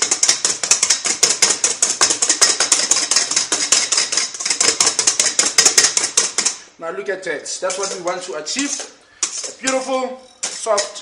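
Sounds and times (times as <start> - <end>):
whisk clattering in metal bowl: 0.0 - 6.6, 7.6 - 11.0.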